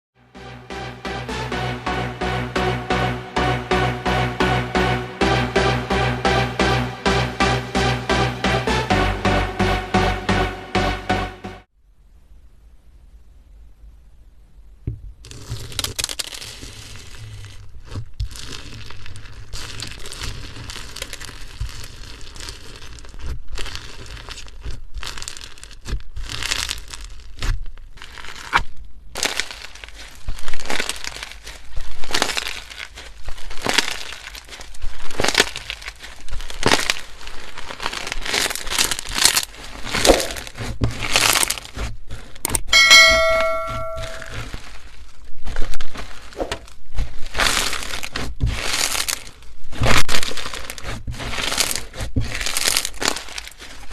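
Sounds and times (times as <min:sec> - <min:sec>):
slime squishing and crackling: 0:15.1 - 0:42.6, 0:44.3 - 0:53.9.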